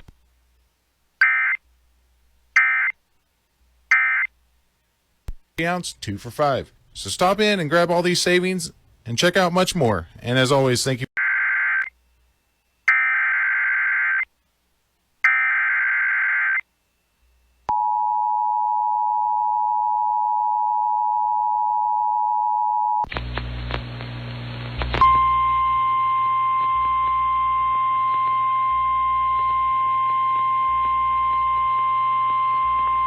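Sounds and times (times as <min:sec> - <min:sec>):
hum and crackle: 0:00.0 - 0:05.6, 0:21.0 - 0:33.0
steady warning alarm tone: 0:25.1 - 0:33.0.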